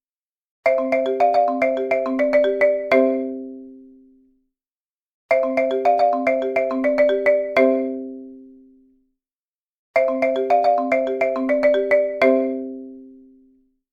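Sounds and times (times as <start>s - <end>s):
marimba alarm ringtone: 0.7s - 4.0s, 5.3s - 8.6s, 10.0s - 13.4s.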